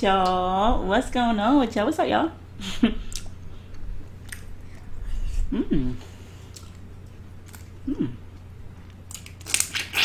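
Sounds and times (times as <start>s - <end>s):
wet eating clicks and smacks: 3.1s - 4.9s
person humming mm: 5.3s - 6.1s, 7.8s - 8.3s.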